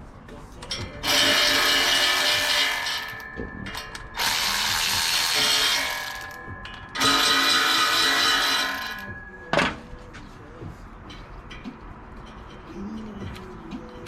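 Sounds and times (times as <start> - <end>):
ratchet wrench ratcheting: 0.6 - 9.1.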